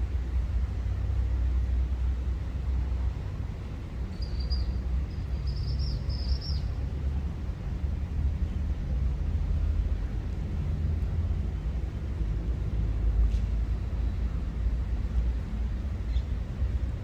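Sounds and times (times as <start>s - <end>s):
bird chirping: 4.1s - 6.7s.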